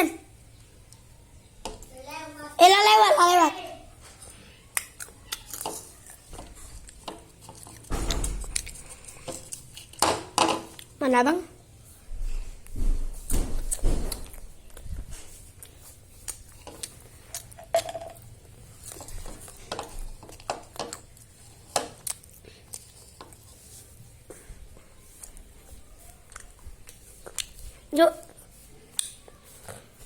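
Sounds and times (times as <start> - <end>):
faint room noise: 0.0 - 30.0
small objects clicking and tapping: 4.7 - 10.9, 15.6 - 23.5.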